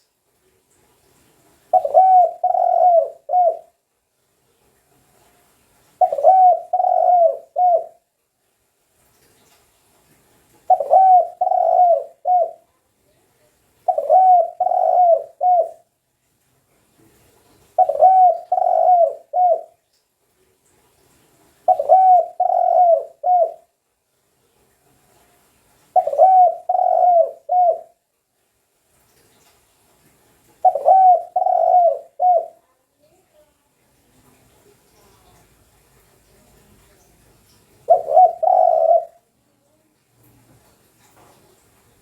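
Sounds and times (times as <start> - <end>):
dove cooing: 1.7 - 3.7, 6.0 - 8.0, 10.7 - 12.6, 13.8 - 15.8, 17.8 - 19.8, 21.7 - 23.7, 25.9 - 28.0, 30.6 - 32.6, 37.8 - 39.3.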